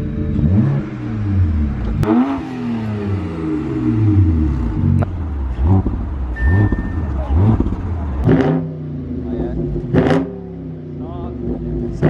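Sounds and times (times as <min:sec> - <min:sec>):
car engine revving: 0:00.3 - 0:12.0.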